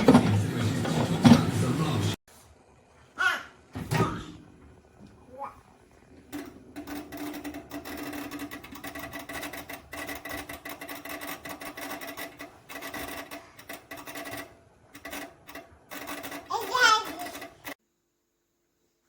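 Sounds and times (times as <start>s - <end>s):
fast rattling clicking: 6.2s - 17.8s.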